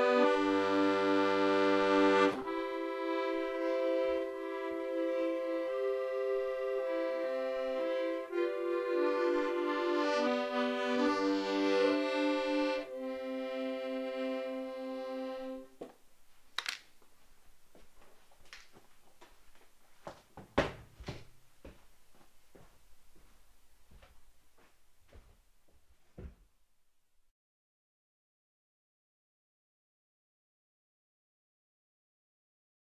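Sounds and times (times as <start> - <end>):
accordion melody: 0.0 - 15.8.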